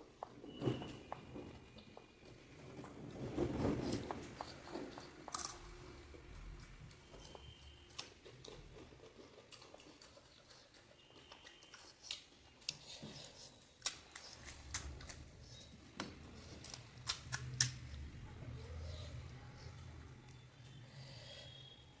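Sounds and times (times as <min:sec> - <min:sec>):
crisp shells crunching when chewed: 0:04.4 - 0:18.1.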